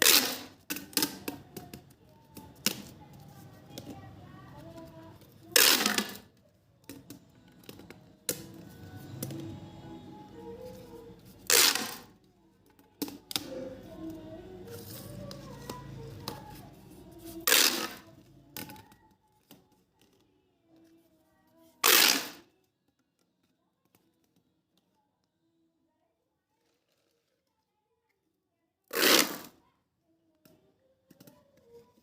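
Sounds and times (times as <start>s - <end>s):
pop tube zipping pops: 0.0s - 1.2s, 5.6s - 6.2s, 11.4s - 12.1s, 17.4s - 18.0s, 21.8s - 22.4s, 28.9s - 29.6s.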